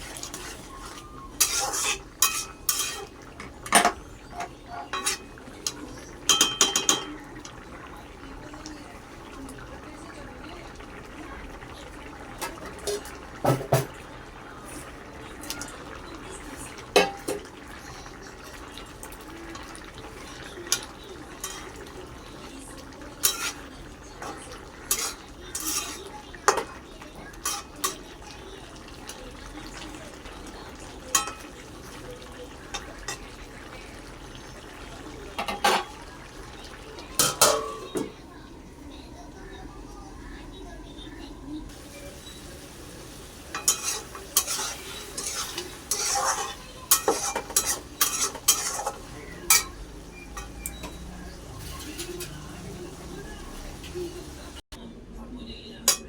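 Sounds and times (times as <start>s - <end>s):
metal utensil scraping a pot: 0.0s - 7.1s, 20.7s - 21.9s, 23.2s - 26.7s, 27.4s - 28.0s, 43.5s - 52.6s.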